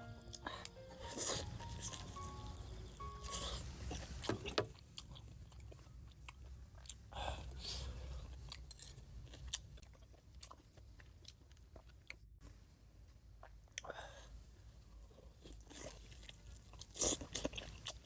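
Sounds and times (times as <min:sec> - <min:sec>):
person chewing food: 0:00.2 - 0:12.4, 0:13.4 - 0:18.0.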